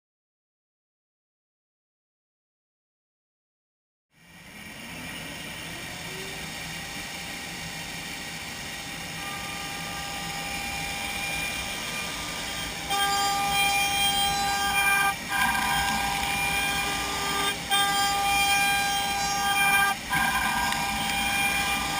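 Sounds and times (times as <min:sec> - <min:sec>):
machine high whine: 0:04.2 - 0:21.9.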